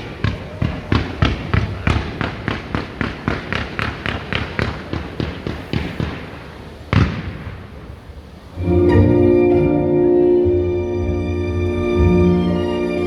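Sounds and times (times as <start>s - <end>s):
fireworks bangs: 0.0s - 8.4s
music with long held tones: 8.6s - 13.0s.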